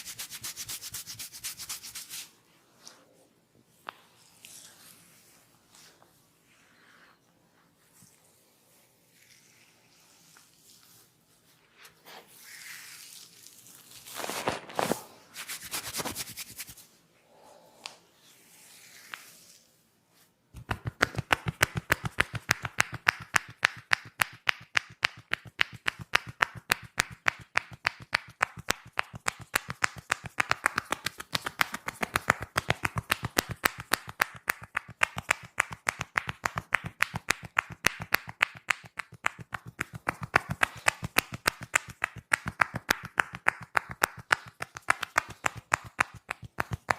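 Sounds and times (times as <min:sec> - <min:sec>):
rhythmic hand slaps: 0:20.6 - 0:46.9.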